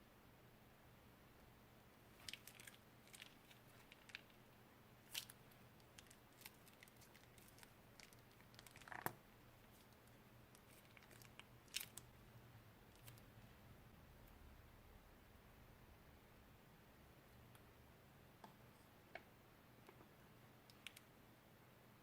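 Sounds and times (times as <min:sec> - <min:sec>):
crinkles and clicks of handling materials: 0:02.1 - 0:12.2, 0:12.9 - 0:13.3, 0:18.4 - 0:21.2.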